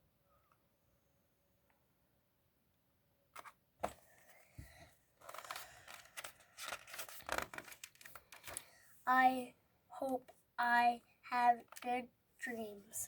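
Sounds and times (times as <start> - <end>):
paper pages rustling: 5.2 - 8.8.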